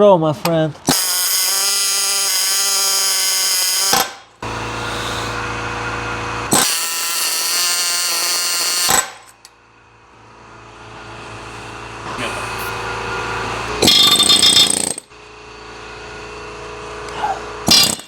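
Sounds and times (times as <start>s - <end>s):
pneumatic air hammer buzzing: 0.8s - 9.6s, 12.2s - 15.2s, 17.0s - 18.0s.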